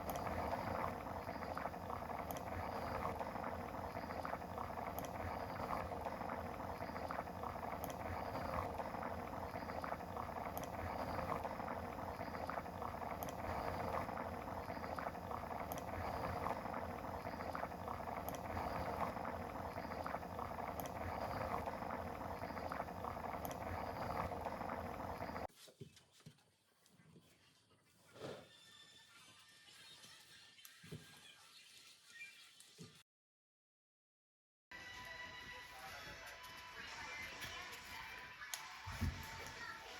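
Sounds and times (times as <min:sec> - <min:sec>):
watery bubbling: 0:00.0 - 0:25.5.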